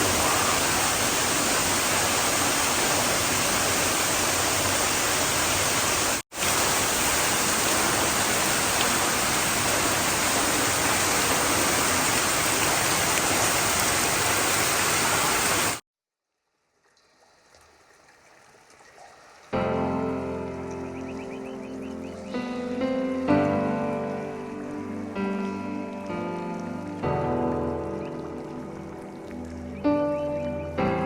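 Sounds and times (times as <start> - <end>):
waterfall rushing: 0.0 - 15.8.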